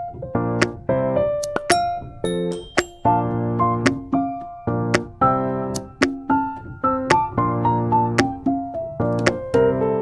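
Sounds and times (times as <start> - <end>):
electronic keyboard chords: 0.4 - 10.0
sharp percussion hits: 1.4 - 5.3.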